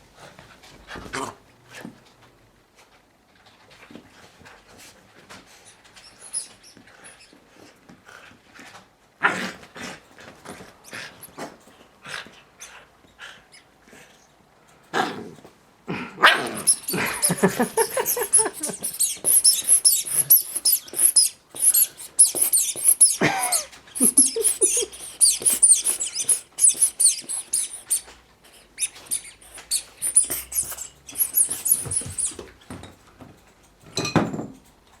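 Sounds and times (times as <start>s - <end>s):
squeaky rubber toy squeaking: 6.0s - 7.3s, 16.4s - 32.5s.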